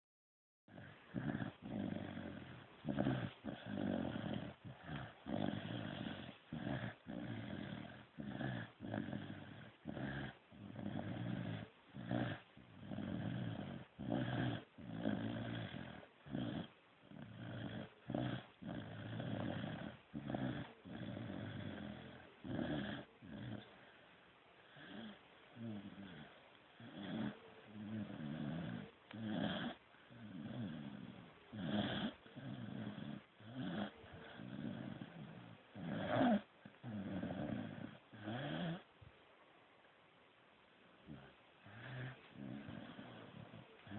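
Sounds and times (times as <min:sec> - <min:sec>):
person snoring: 0:00.7 - 0:23.8, 0:24.7 - 0:38.9, 0:41.1 - 0:43.9.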